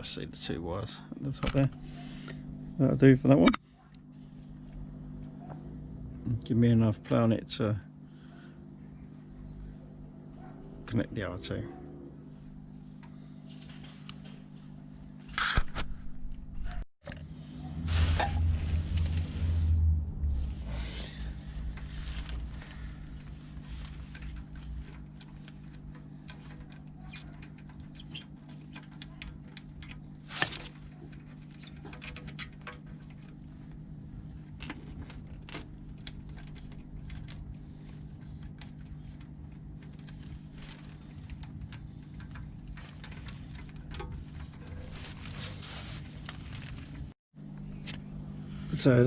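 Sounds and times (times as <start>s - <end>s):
steady low hum: 0.0s - 49.0s
clicks and rustles of wiring: 21.6s - 47.2s.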